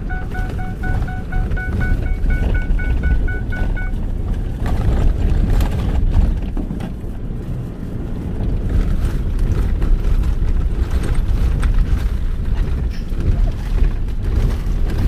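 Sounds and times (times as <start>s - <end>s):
electronic warning beep: 0.0s - 4.0s
truck engine low rumble: 0.0s - 14.2s.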